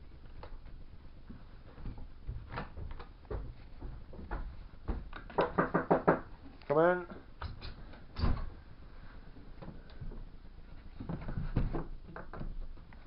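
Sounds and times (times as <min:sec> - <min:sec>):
knocks and scrapes of wood: 0:01.3 - 0:06.3, 0:09.6 - 0:13.0.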